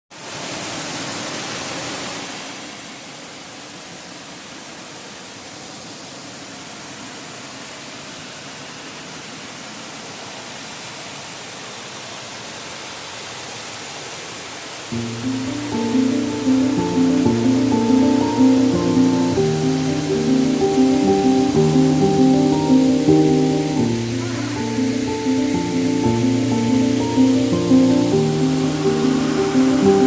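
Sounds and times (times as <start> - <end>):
waterfall rushing: 0.1 - 30.0.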